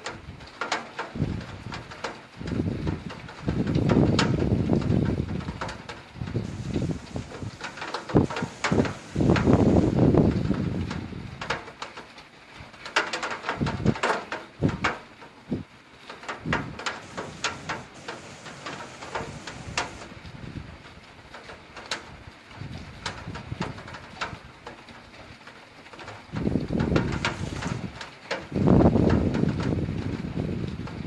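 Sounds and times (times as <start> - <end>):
raindrops tapping hard surface: 0.0 - 31.0
thunder rumble: 2.4 - 11.4, 16.5 - 20.8, 26.4 - 31.0.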